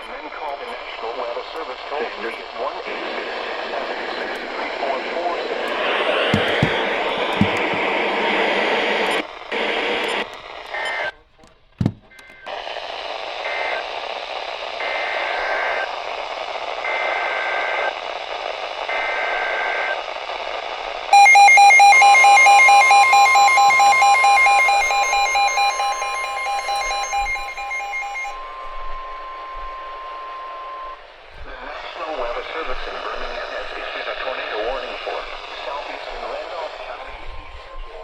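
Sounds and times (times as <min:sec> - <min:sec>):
radio hiss: 0:00.0 - 0:11.3, 0:12.3 - 0:38.0
two-tone alert signal: 0:06.4 - 0:07.8, 0:21.2 - 0:28.5
digital header tone bursts: 0:21.2 - 0:28.6.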